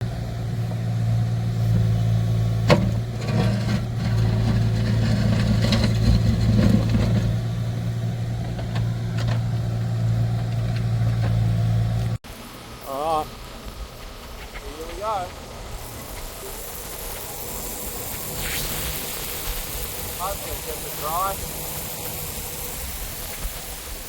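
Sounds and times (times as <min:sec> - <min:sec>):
tractor engine running: 0:00.0 - 0:12.2, 0:13.1 - 0:24.0.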